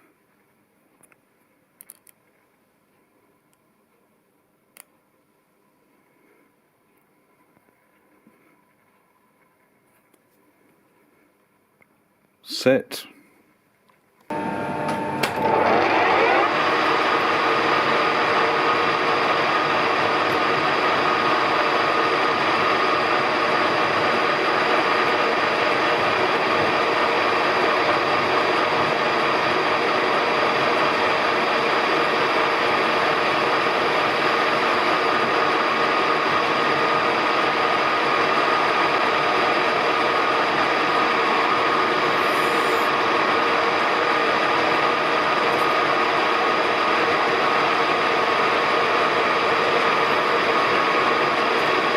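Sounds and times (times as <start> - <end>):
lathe motor whining: 14.3 - 51.9.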